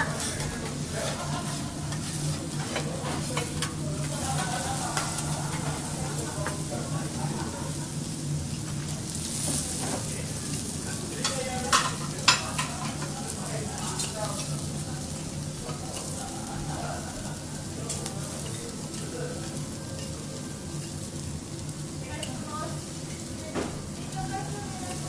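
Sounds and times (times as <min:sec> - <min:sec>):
metal utensils clicking on griddle: 0:00.0 - 0:06.7, 0:11.1 - 0:17.0, 0:17.8 - 0:20.2
food sizzling on a griddle: 0:00.0 - 0:25.0.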